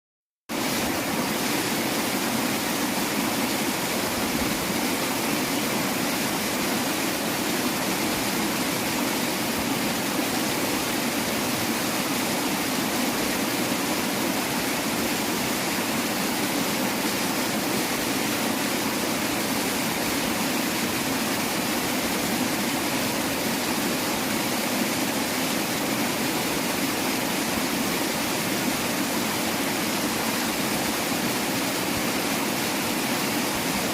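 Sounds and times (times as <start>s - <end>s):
river water rushing: 0.5s - 33.9s.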